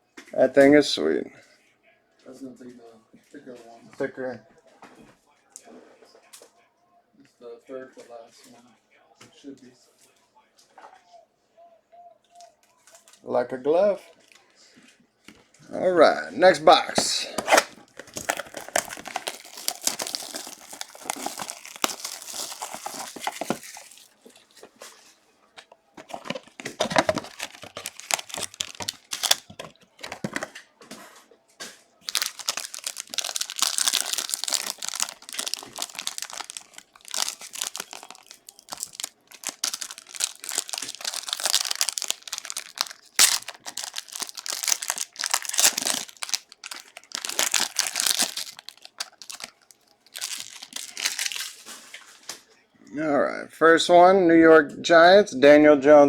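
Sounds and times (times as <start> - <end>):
plastic wrappers tearing and crinkling: 17.0 - 24.6, 26.0 - 30.5, 32.0 - 52.0.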